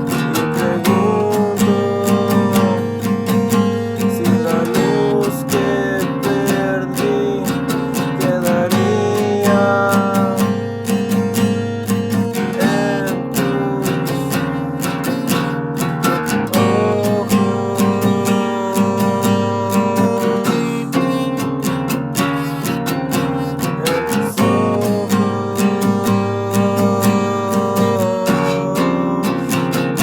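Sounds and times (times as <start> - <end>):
strummed acoustic guitar music: 0.0 - 30.0.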